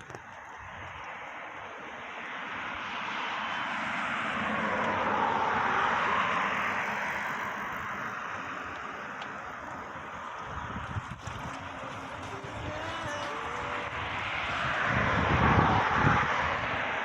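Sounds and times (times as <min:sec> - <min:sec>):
ocean waves breaking: 0:05.2 - 0:15.0.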